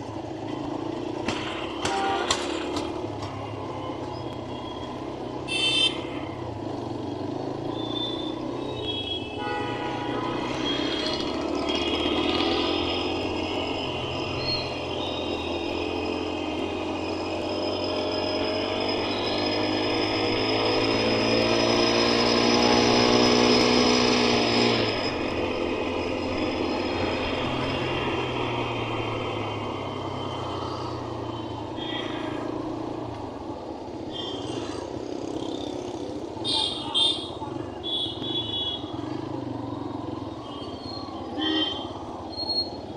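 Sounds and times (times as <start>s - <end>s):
road traffic engine hum: 0.0s - 42.9s
engine speeding up: 15.5s - 31.4s.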